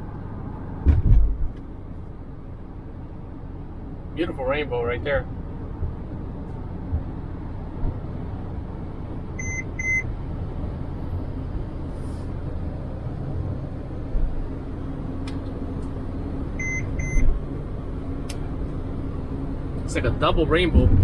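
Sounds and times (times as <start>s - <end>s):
vehicle road and engine noise: 0.0s - 21.0s.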